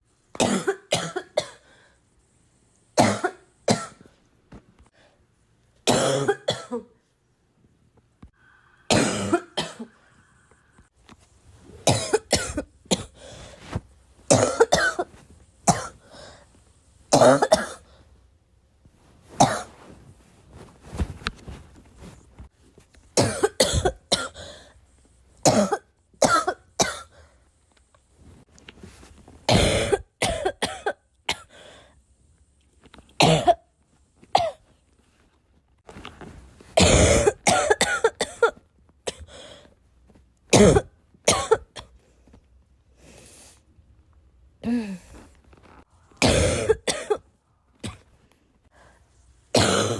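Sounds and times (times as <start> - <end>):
person coughing: 0.4 - 1.6, 3.0 - 4.0, 5.9 - 7.0, 8.9 - 10.0, 11.9 - 13.3, 14.3 - 16.0, 17.1 - 17.9, 19.4 - 19.7, 23.2 - 24.6, 25.4 - 27.2, 29.5 - 31.6, 33.2 - 33.6, 36.8 - 39.3, 40.6 - 41.9, 46.2 - 47.2, 49.6 - 49.9.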